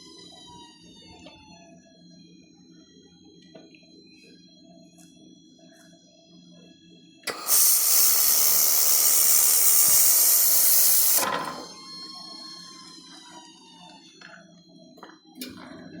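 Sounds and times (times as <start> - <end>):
laser welder hissing: 7.3 - 11.7
faint high whine falling in pitch: 7.8 - 16.0.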